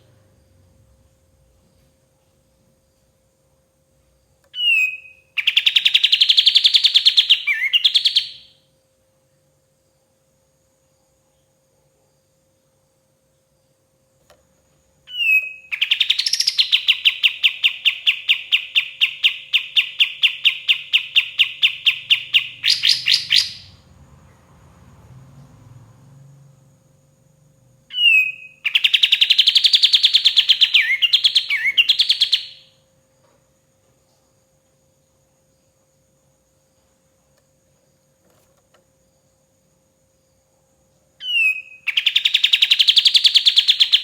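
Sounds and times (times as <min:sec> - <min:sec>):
faint hum: 0:00.0 - 0:44.0
bird singing fast trills: 0:04.6 - 0:08.6, 0:15.1 - 0:23.8, 0:27.9 - 0:32.8, 0:41.2 - 0:44.0.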